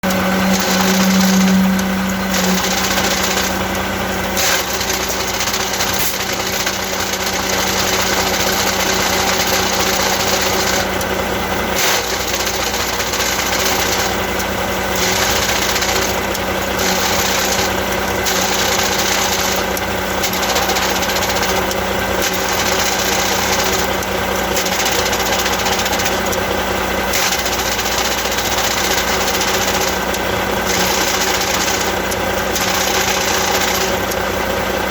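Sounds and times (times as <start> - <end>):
truck drivetrain hum: 0.0 - 34.9.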